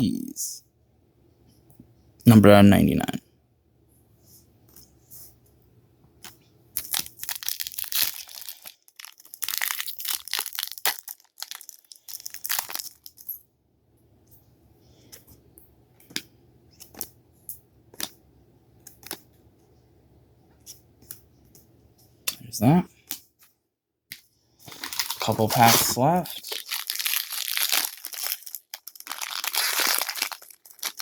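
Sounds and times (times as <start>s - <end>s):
wrapper tearing and crinkling: 6.8s - 13.3s, 24.7s - 31.0s.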